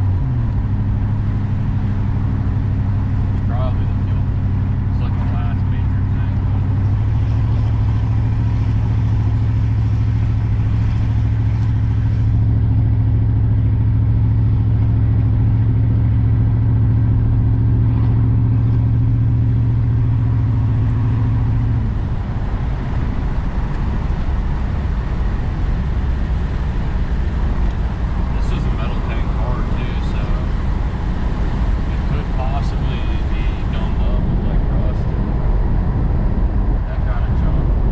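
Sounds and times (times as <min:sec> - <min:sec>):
car engine droning: 0:00.0 - 0:37.9
road and tyre noise: 0:00.0 - 0:37.9.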